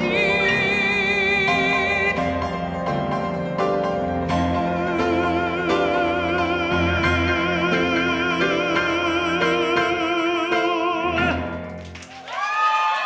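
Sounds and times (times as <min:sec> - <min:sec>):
man singing a long note: 0:00.0 - 0:02.3, 0:04.6 - 0:11.5
piano accompaniment: 0:00.0 - 0:12.2.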